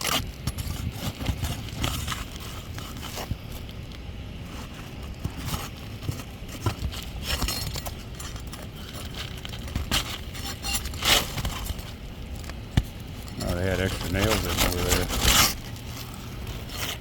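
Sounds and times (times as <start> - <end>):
tool prying at shingles: 5.2 - 17.0.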